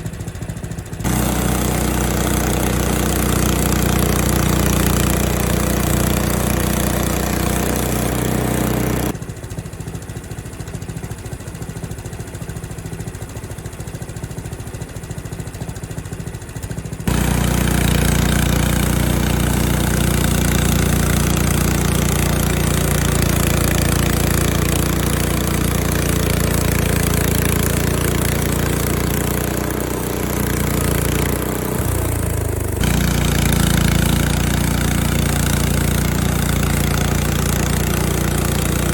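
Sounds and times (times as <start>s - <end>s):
small gas engine running: 0.0s - 38.9s.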